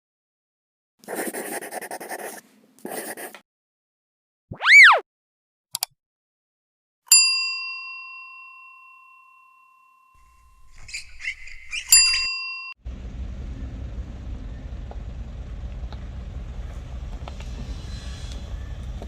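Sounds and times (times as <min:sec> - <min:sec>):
rising and falling whistle: 0:04.5 - 0:05.0
bell-like ding: 0:07.1 - 0:10.4.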